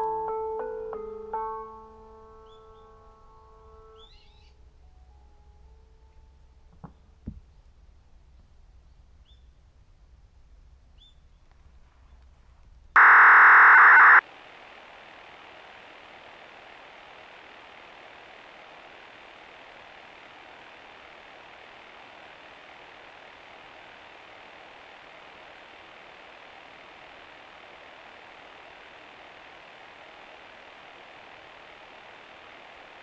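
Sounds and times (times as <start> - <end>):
loudspeaker static hiss: 13.0 - 14.2.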